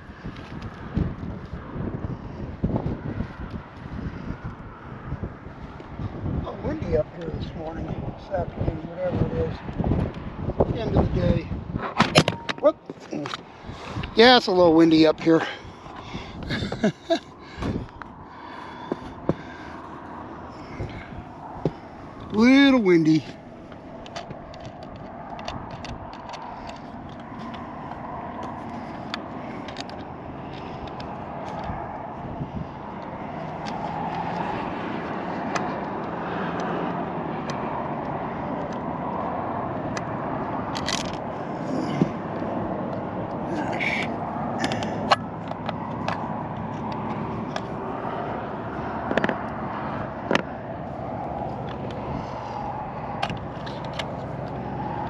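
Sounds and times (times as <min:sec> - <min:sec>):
wind buffeting microphone: 0:00.0 - 0:55.0
handling clicks and knocks: 0:11.8 - 0:14.1, 0:20.8 - 0:31.8, 0:32.9 - 0:38.9, 0:39.8 - 0:43.4, 0:44.6 - 0:47.9, 0:49.0 - 0:49.6, 0:50.2 - 0:50.5, 0:51.2 - 0:55.0.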